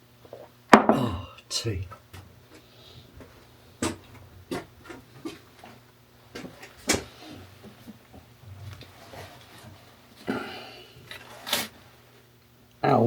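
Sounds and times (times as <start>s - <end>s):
hard objects knocking and clinking: 0.7s - 1.0s.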